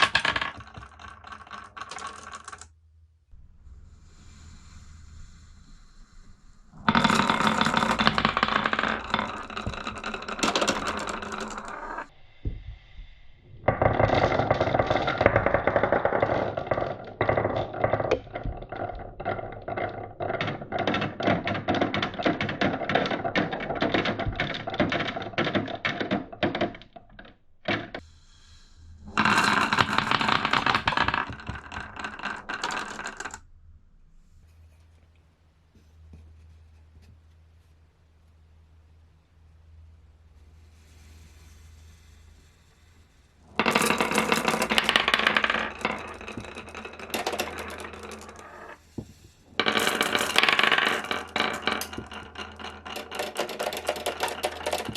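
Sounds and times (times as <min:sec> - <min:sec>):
marbles clattering down a slope: 0:00.0 - 0:02.7, 0:06.8 - 0:12.1, 0:13.6 - 0:28.0, 0:29.0 - 0:33.5, 0:43.4 - 0:54.9.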